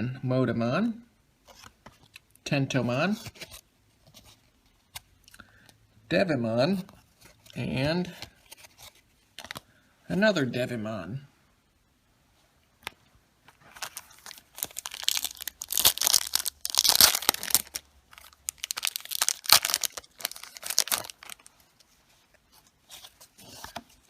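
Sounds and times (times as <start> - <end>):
wrapper tearing and crinkling: 13.7 - 21.5.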